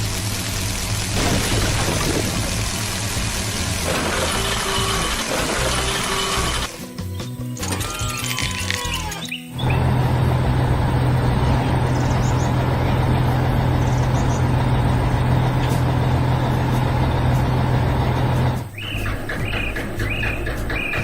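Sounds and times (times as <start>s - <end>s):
heavy vehicle engine running: 0.0s - 6.8s, 9.5s - 21.0s.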